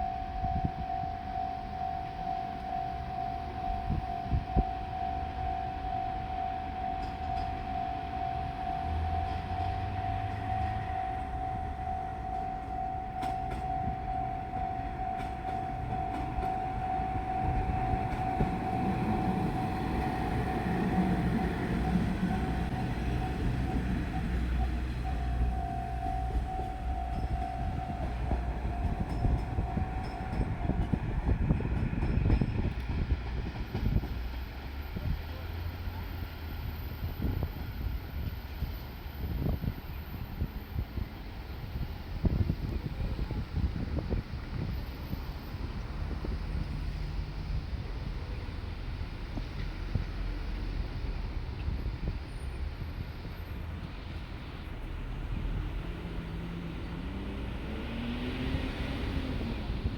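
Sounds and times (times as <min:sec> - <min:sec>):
level-crossing alarm: 0:00.0 - 0:34.1
diesel engine rumble: 0:00.0 - 0:59.9.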